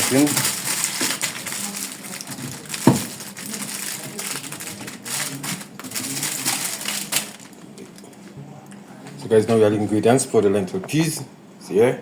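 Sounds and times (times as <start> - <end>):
aluminium foil crinkling: 0.0 - 8.2.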